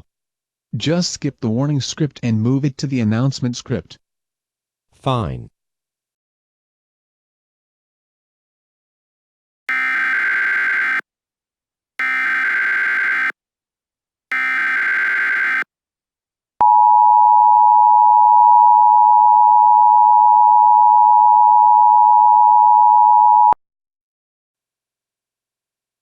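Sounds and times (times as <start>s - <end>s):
digital data tones: 9.7s - 11.0s, 12.0s - 13.3s, 14.3s - 15.6s.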